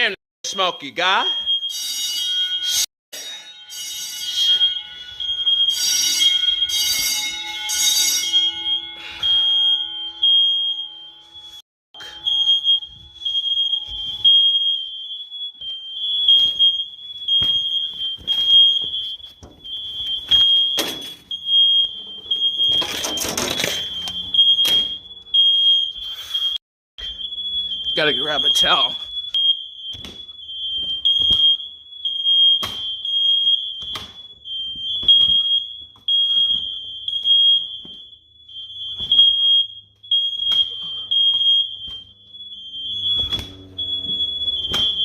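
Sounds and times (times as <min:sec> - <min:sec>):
harsh overtone-rich sound: 0:00.0 - 0:29.1
smoke alarm beeping: 0:00.0 - 0:45.0.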